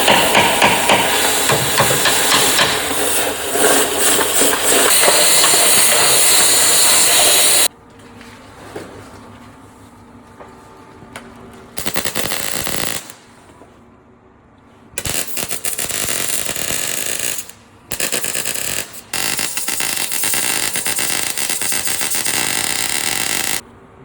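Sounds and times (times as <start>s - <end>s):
mig welder crackling: 0.0s - 7.7s, 11.8s - 13.2s, 15.0s - 23.6s.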